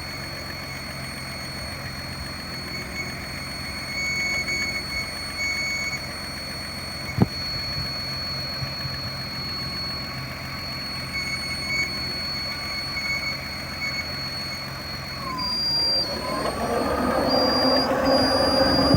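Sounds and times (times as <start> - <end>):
high-pitched whistle: 0.7 - 18.9
petrol engine idling: 13.4 - 18.9.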